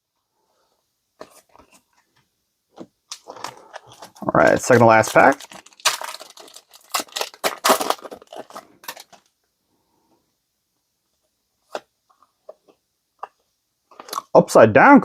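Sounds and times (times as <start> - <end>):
foil pack tearing open: 3.1 - 9.2.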